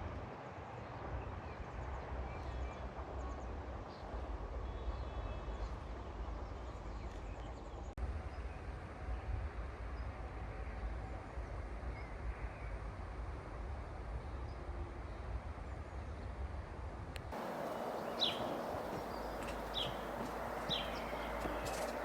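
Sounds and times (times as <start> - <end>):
low outdoor rumble: 17.4 - 22.0.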